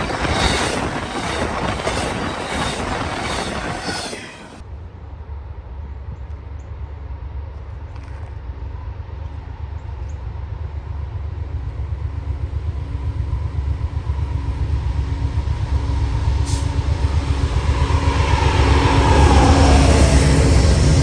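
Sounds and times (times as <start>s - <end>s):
train rumbling past: 0.0s - 21.0s.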